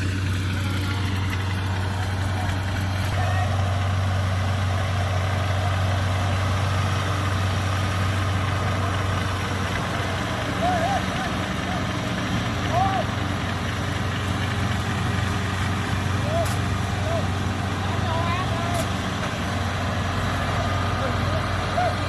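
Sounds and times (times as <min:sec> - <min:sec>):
diesel engine running: 0:00.0 - 0:22.0.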